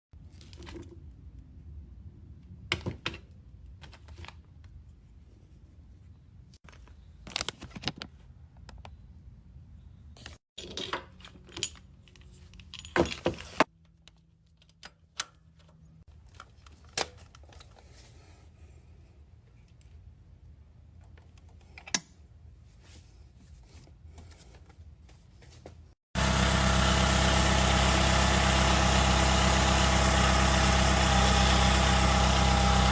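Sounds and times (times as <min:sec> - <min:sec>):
car engine idling: 0:26.2 - 0:32.9.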